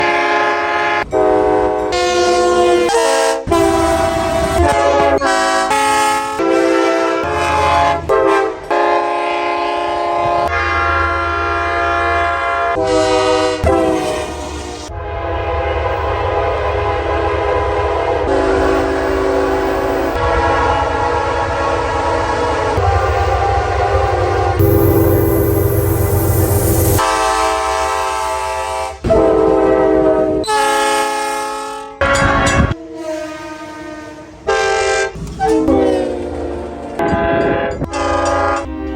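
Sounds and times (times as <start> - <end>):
locomotive air horns: 0.0 - 38.8.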